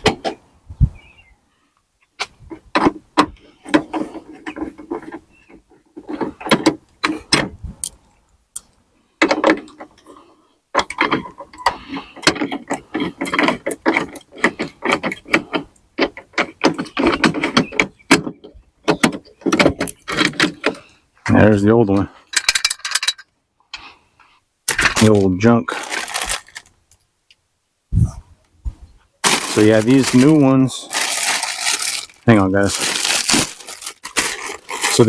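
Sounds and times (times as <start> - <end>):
tool and part clatter: 22.3 - 23.3.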